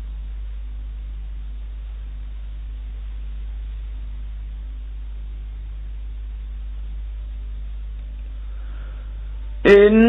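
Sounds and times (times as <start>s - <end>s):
low electrical hum: 0.0s - 10.0s.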